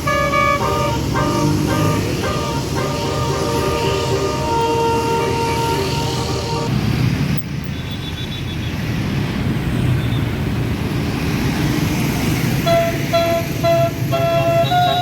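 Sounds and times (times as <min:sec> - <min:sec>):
multi-tone horn beeps: 0:00.0 - 0:06.7, 0:12.6 - 0:15.0
diesel bus engine rumbling: 0:00.0 - 0:15.0.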